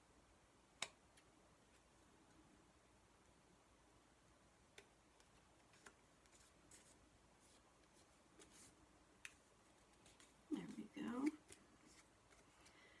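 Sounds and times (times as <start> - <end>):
paper rustling: 5.3 - 12.9.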